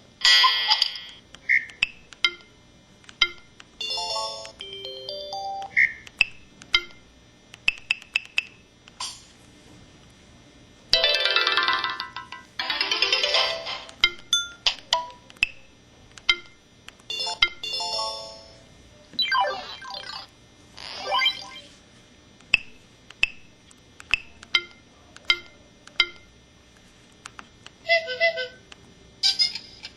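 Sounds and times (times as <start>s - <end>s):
short electronic beeps and chimes: 19.2s - 20.3s, 21.0s - 21.7s.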